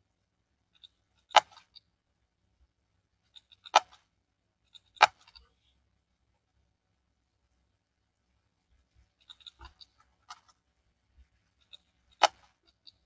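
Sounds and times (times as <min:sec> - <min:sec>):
computer mouse clicks: 0:00.8 - 0:01.8, 0:11.6 - 0:13.0
faint ticks: 0:08.7 - 0:13.0.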